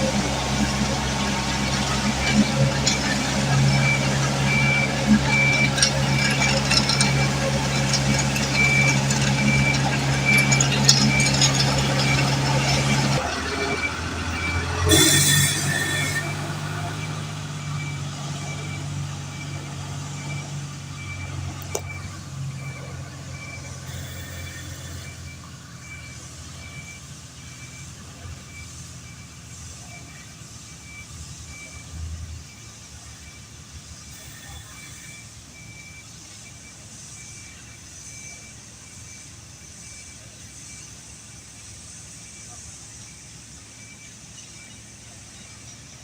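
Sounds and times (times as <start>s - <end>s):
heavy vehicle engine running: 0.0s - 46.0s
reversing alarm beeping: 0.1s - 40.9s
short burst of hissing: 14.9s - 17.2s.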